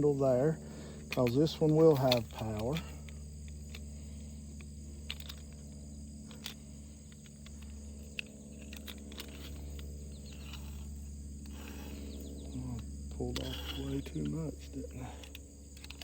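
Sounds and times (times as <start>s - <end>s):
insect chirr: 0.0s - 16.0s
low hum: 0.0s - 16.0s.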